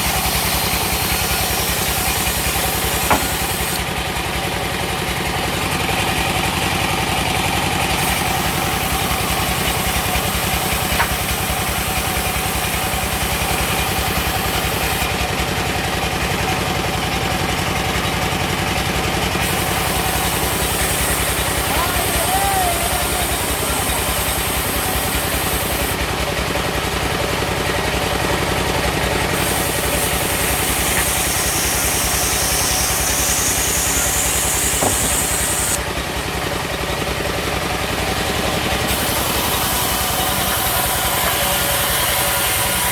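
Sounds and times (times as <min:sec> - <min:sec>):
sawmill engine drone: 0:00.0 - 0:42.9
sharp knocks: 0:02.9 - 0:03.8, 0:34.8 - 0:35.4.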